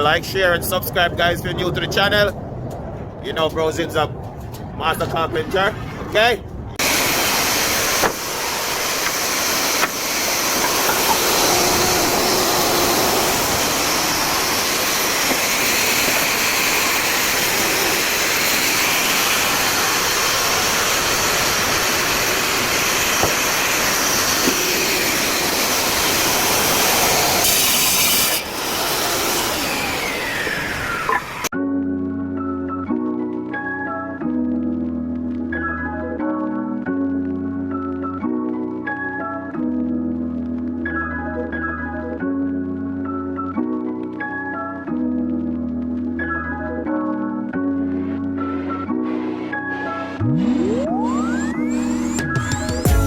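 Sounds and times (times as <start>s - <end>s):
power tool working wood: 6.8s - 31.5s, 49.0s - 53.0s.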